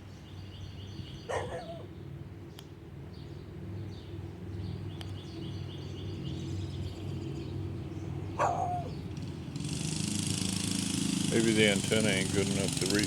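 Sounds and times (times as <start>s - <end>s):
birds chirping: 0.0s - 9.4s, 10.2s - 13.0s
low background hum: 0.0s - 9.6s.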